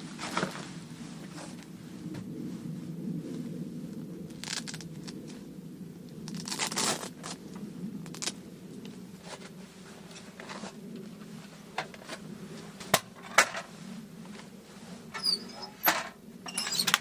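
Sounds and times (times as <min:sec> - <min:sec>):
steady low hum: 0:00.0 - 0:17.0
crinkling and tearing: 0:04.3 - 0:05.4, 0:06.2 - 0:08.4.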